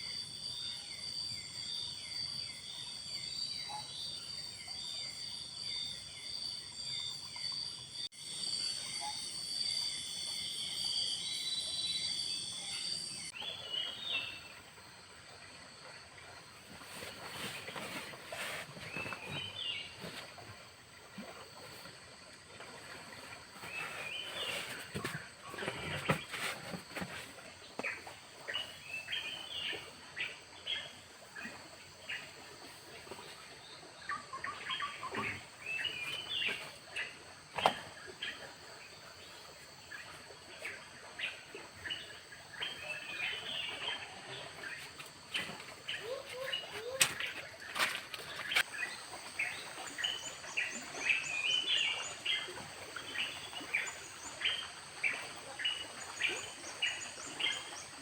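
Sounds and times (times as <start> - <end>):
birds chirping: 16.8 - 20.4, 39.9 - 57.9.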